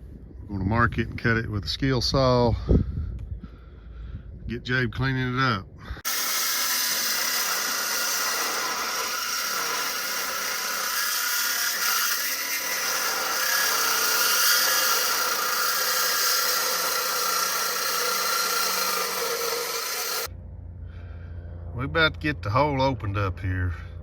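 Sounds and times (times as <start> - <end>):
angle grinder on steel pipe: 6.0 - 20.3.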